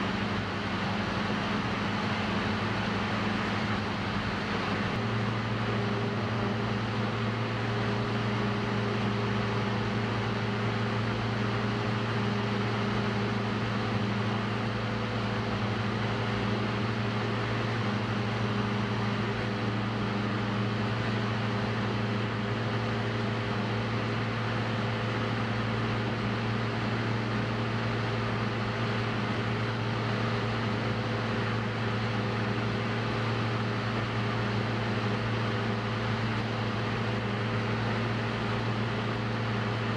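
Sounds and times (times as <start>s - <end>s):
aircraft engine and propeller drone: 0.0s - 39.9s.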